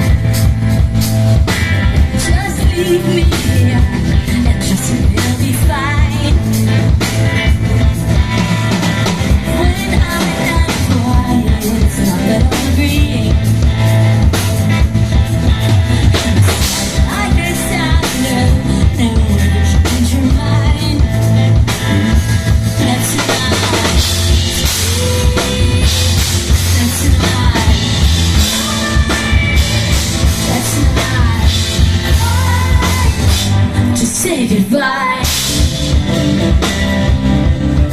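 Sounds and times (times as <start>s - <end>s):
live rock band playing: 0.0s - 37.9s
woman singing: 2.0s - 7.1s, 9.3s - 14.0s, 15.9s - 21.6s, 22.6s - 35.6s.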